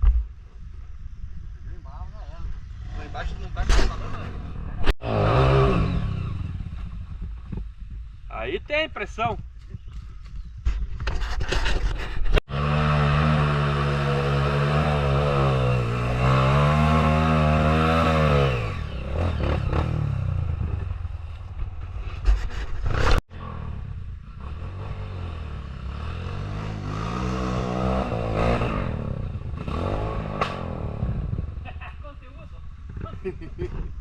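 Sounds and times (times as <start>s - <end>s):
motorcycle engine revving: 2.8s - 8.1s, 12.4s - 31.6s.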